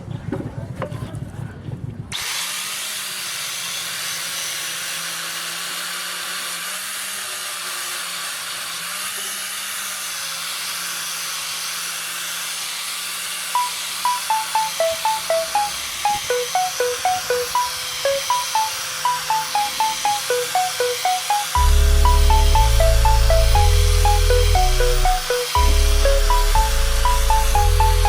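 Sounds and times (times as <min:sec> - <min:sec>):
plucked musical notes: 0:13.6 - 0:28.0.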